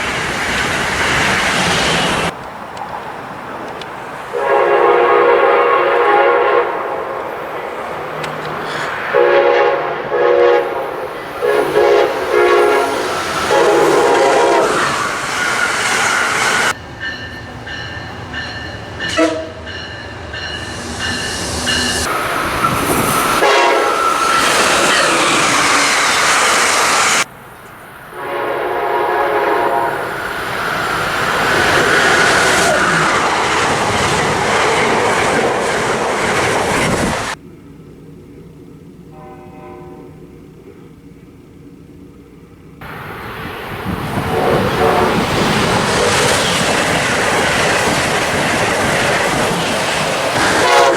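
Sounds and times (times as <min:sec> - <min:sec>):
train rumble: 0:00.0 - 0:50.9
locomotive air horn blasts: 0:04.3 - 0:07.8, 0:08.6 - 0:15.2, 0:19.1 - 0:19.8, 0:23.4 - 0:24.2, 0:28.1 - 0:30.2, 0:39.1 - 0:40.3, 0:44.2 - 0:45.2, 0:50.4 - 0:50.9
train wheel clatter: 0:42.8 - 0:50.9.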